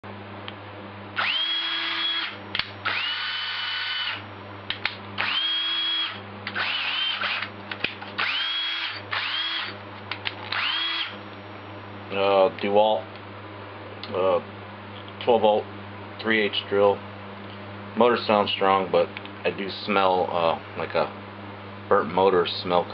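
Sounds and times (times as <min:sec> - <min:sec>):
cordless drill whining: 0:01.2 - 0:04.2, 0:05.2 - 0:07.5, 0:08.2 - 0:09.8, 0:10.5 - 0:11.3
drill trigger clicks: 0:01.2 - 0:04.2, 0:04.8 - 0:09.8, 0:10.5 - 0:11.2.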